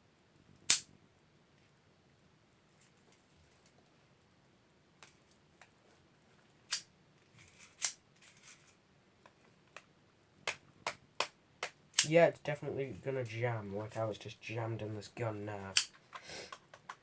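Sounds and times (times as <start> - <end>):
bb gun clicks: 0.7 - 0.9, 15.8 - 17.0.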